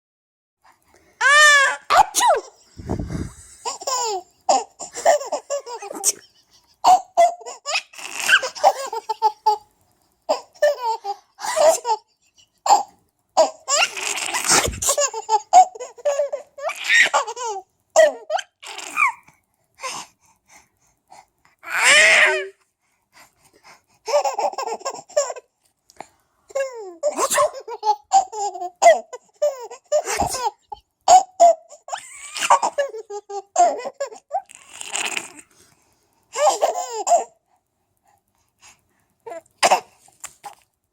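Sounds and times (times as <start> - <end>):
baby laughing: 3.6 - 9.7, 10.3 - 19.2, 24.1 - 25.5, 26.5 - 35.4, 36.4 - 37.4.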